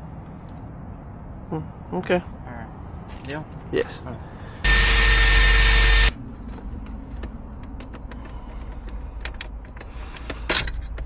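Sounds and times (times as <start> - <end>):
loud noise with whine: 4.6 - 6.2.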